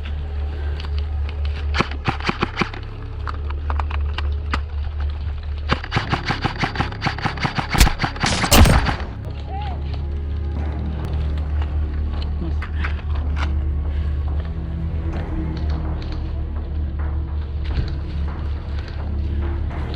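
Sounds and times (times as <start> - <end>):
airsoft guns firing: 7.6 - 9.3.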